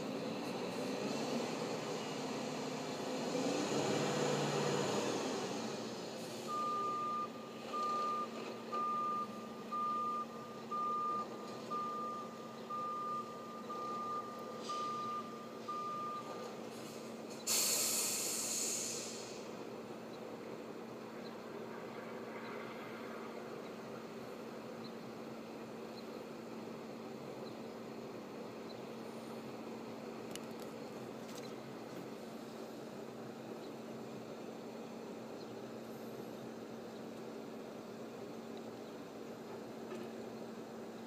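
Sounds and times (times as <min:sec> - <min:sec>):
diesel engine running: 0:00.0 - 0:41.0
truck reversing alarm beeps: 0:06.2 - 0:16.6
air brakes hiss: 0:16.7 - 0:19.5.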